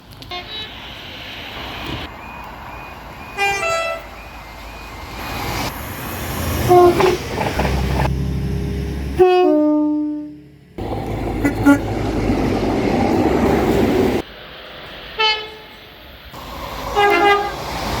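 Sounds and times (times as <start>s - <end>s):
low train rumble: 0.0s - 18.0s
train horn blasts: 3.4s - 4.1s, 6.6s - 7.2s, 9.1s - 12.4s, 15.2s - 15.7s, 17.0s - 17.6s.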